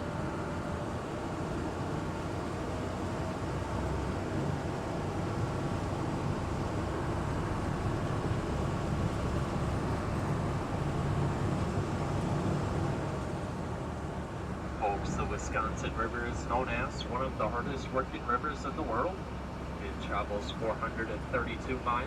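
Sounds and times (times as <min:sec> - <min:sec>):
boat engine droning: 0:00.0 - 0:22.0
steady rush of noise: 0:12.9 - 0:22.0.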